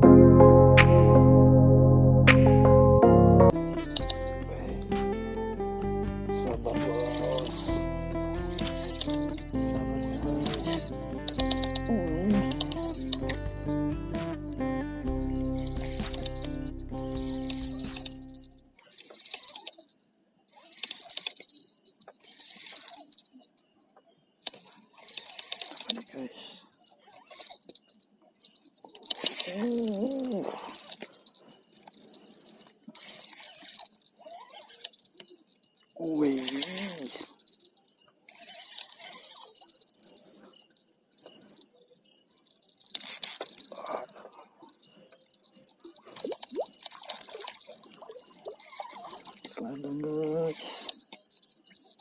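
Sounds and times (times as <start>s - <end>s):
small bell jingling: 3.5s - 52.0s
rustling handling noise: 6.1s - 13.7s
crickets chirping: 6.4s - 14.1s, 15.1s - 52.0s.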